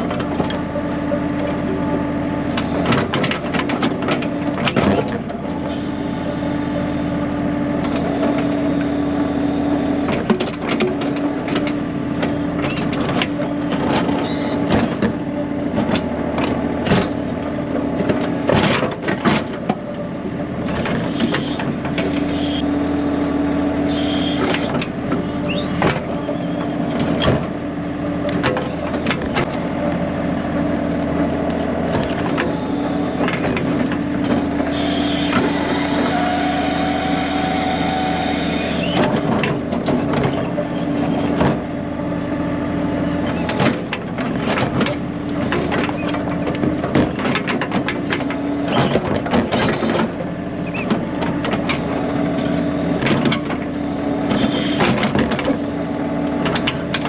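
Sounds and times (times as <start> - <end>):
tractor diesel engine running: 0.0 - 57.0
backhoe digging knocks: 2.6 - 5.4, 10.0 - 15.2, 15.8 - 17.4, 18.0 - 19.8, 24.3 - 26.3, 26.9 - 27.6, 31.8 - 41.7, 43.2 - 55.7.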